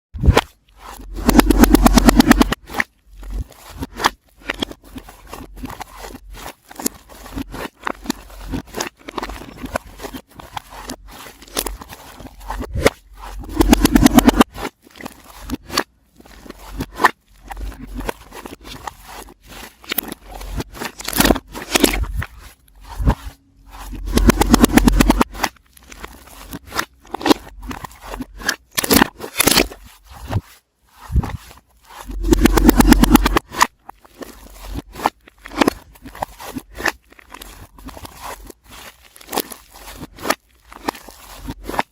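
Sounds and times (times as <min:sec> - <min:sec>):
slime squishing reversed: 0:00.2 - 0:41.9.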